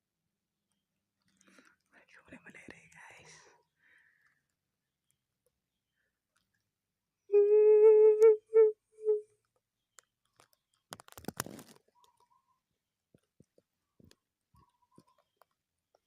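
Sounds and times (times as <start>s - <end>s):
rustling and crunching: 9.9s - 12.3s.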